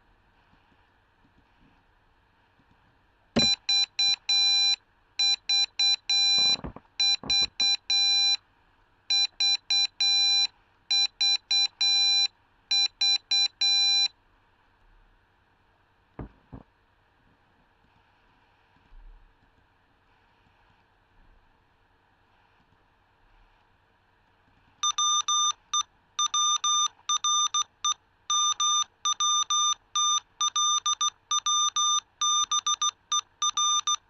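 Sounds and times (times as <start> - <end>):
morse code beeps: 3.4 - 8.4, 9.1 - 14.1, 24.8 - 25.6, 26.2 - 34.0.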